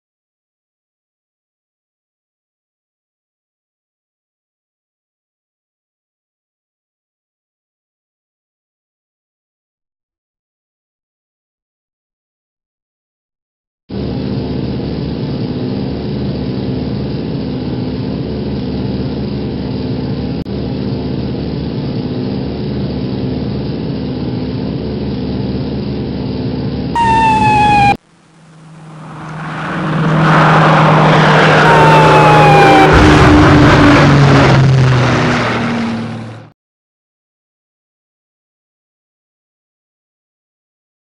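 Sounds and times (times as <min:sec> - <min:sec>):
aircraft engines droning: 0:13.9 - 0:36.5
falling whine: 0:27.0 - 0:36.5.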